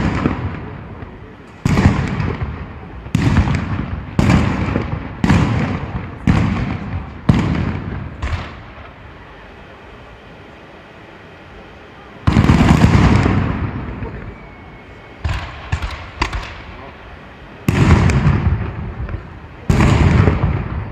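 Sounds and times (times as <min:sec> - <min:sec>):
rumbling echo: 0:00.0 - 0:09.7, 0:12.2 - 0:20.9
firework shells bursting: 0:15.2 - 0:16.8.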